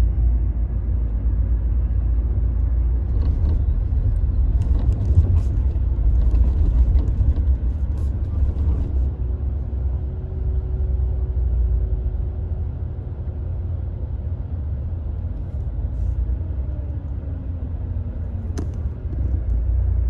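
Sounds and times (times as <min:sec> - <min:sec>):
motor vehicle rumble: 0:00.0 - 0:20.0.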